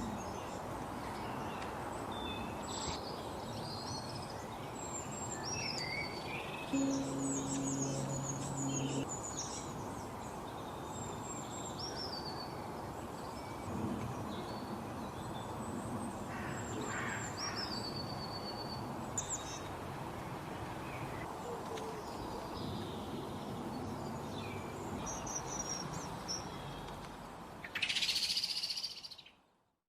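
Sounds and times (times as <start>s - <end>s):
low steady hum: 6.8s - 9.1s
steady background noise: 6.8s - 11.6s.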